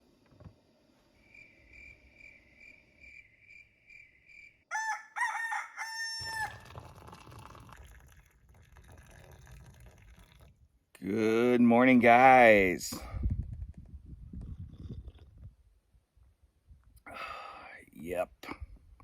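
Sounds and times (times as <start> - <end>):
rooster crowing: 4.7 - 6.7.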